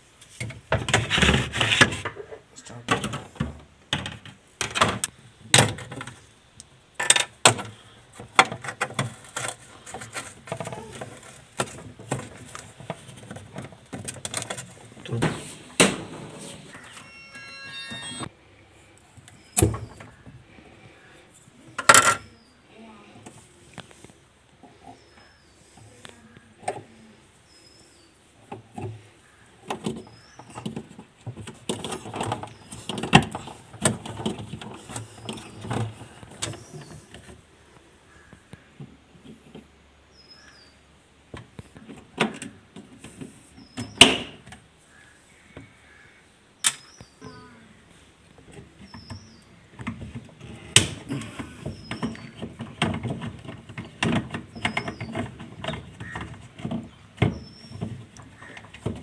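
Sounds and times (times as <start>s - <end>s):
small birds chirping: 24.6s - 31.0s, 31.9s - 33.7s, 34.8s - 38.8s, 40.1s - 40.9s, 43.5s - 44.1s, 44.8s - 52.8s, 53.4s - 58.8s
faint bird chirps: 44.9s - 47.8s.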